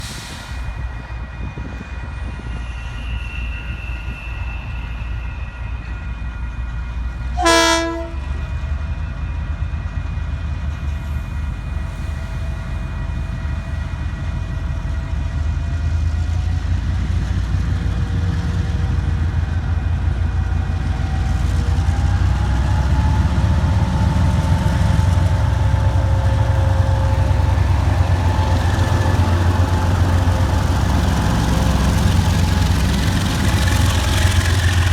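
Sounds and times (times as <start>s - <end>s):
locomotive engines rumbling: 0.0s - 34.9s
locomotive horn blast: 7.4s - 8.4s.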